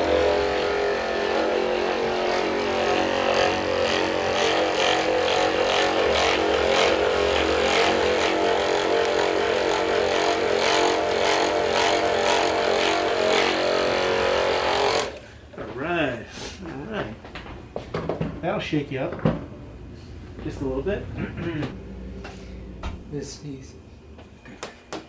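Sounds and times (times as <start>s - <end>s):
massager motor buzz: 0.0s - 15.2s.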